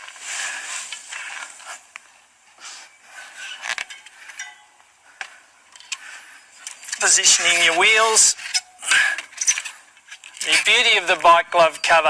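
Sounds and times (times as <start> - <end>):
bicycle clicks and clinks: 3.4 - 4.6, 5.7 - 7.1.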